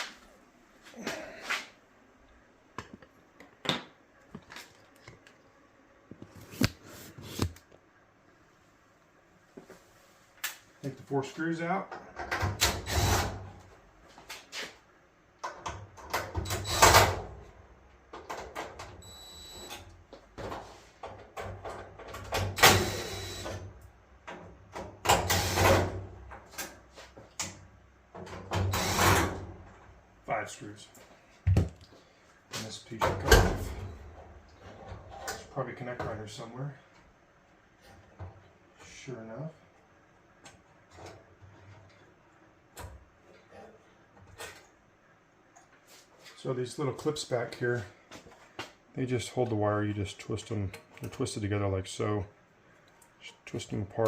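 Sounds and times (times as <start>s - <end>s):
power tool bursts: 12.6s - 13.4s, 22.6s - 23.6s, 25.2s - 25.9s, 28.6s - 29.4s.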